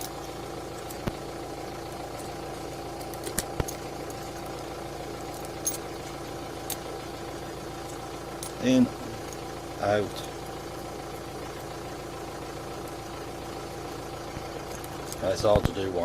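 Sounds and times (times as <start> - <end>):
background hum: 0.0 - 16.0
sharp metallic clicks: 2.2 - 4.6.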